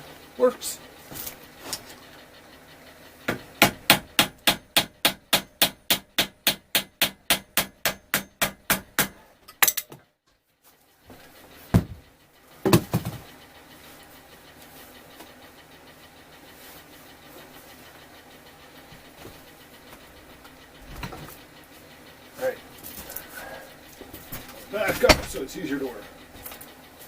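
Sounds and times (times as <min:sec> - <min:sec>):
hammer tapping metal part: 0:03.3 - 0:10.0, 0:24.9 - 0:25.4.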